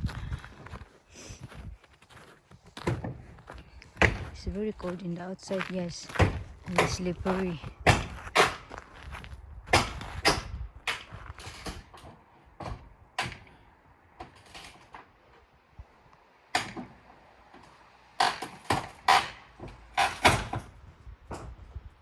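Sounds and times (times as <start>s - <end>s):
knocks and scrapes: 0.0s - 4.6s, 6.1s - 13.6s.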